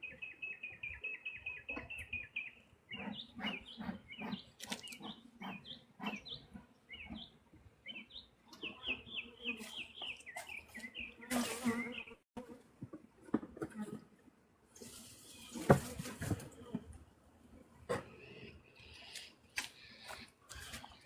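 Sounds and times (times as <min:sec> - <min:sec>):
bird chirping: 0:00.0 - 0:12.2.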